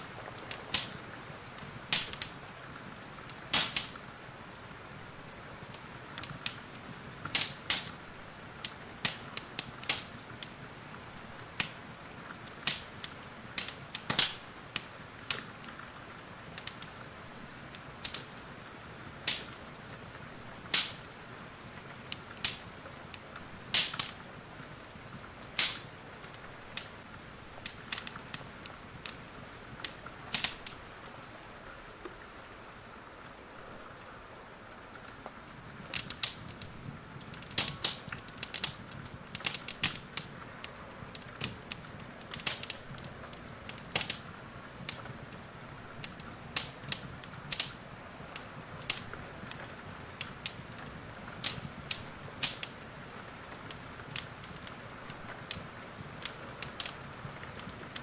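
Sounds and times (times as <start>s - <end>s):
wood fire crackling and popping: 0.0s - 30.9s, 35.0s - 58.0s
rain hissing: 0.0s - 58.0s.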